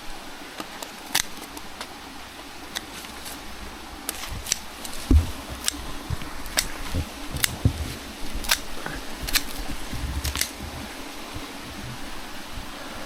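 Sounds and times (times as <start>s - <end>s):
garden scissors clicking: 0.6s - 1.7s, 4.1s - 10.8s
dull thump: 4.2s - 12.1s.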